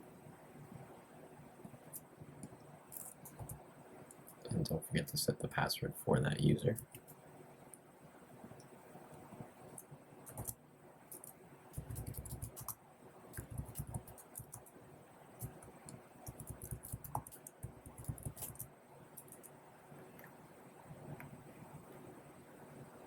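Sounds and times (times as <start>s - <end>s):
keyboard typing clicks: 1.9s - 4.4s, 9.8s - 12.8s, 13.4s - 14.7s, 15.4s - 19.5s.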